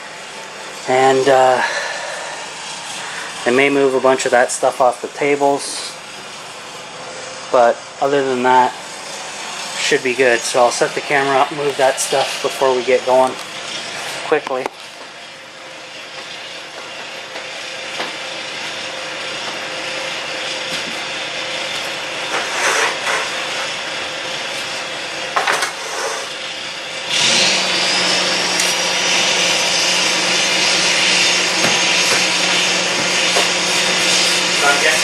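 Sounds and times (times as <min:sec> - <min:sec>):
compressed air hissing: 0:00.0 - 0:03.8, 0:22.3 - 0:23.7
high whine: 0:00.0 - 0:35.0.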